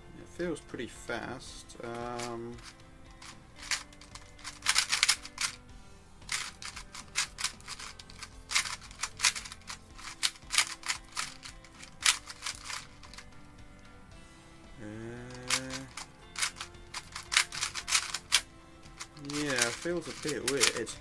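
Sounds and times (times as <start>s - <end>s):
puzzle cube layers clicking: 1.9s - 5.6s, 6.3s - 13.3s, 15.2s - 21.0s.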